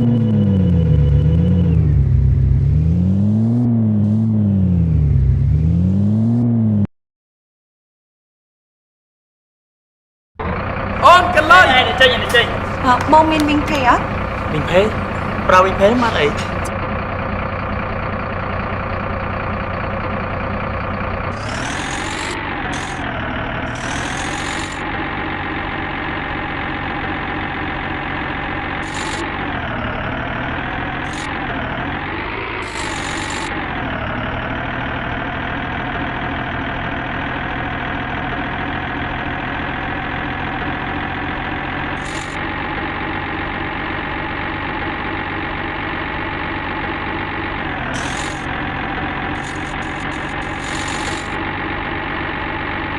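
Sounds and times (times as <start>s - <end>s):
construction vehicle engine idling: 10.4s - 52.9s.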